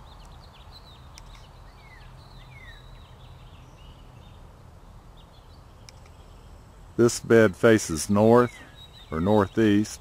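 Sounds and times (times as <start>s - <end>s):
songbirds chirping: 0.0s - 10.0s.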